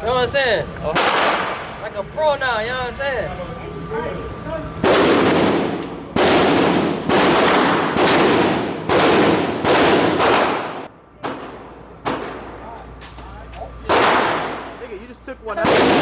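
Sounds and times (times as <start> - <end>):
echoing gunshots: 1.0 - 1.8, 4.8 - 12.6, 13.9 - 14.8, 15.6 - 16.0.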